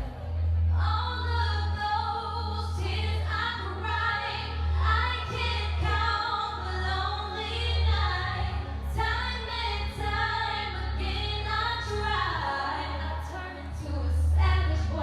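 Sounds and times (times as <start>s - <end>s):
backing music with heavy bass: 0.0s - 15.0s
woman singing: 0.7s - 15.0s.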